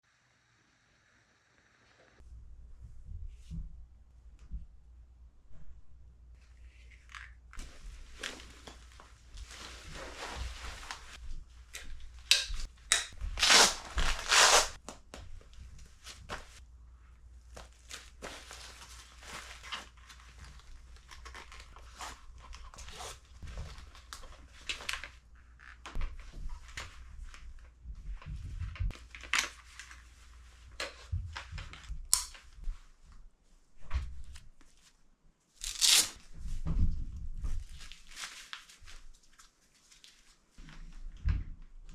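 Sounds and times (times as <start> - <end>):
fabric rustling and scraping: 7.6 - 14.8, 15.5 - 16.6, 17.4 - 31.9, 35.7 - 40.9
tearing noises: 12.3 - 14.8, 35.6 - 36.2.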